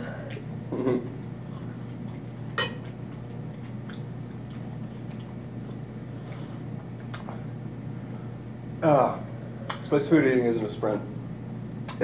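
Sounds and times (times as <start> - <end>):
low room hum: 0.0 - 12.0
chewing: 1.4 - 5.9
cutlery clinking on dishes: 2.6 - 2.9.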